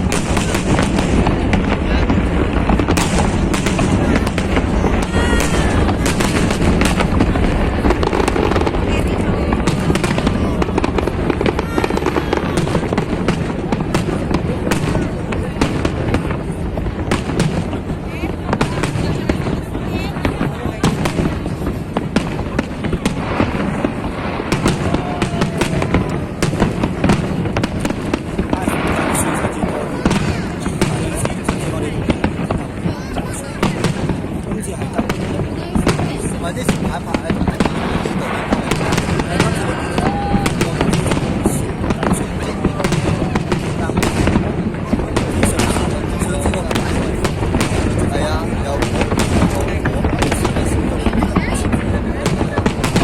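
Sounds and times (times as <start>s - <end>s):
fireworks bangs and cracks: 0.0s - 53.0s.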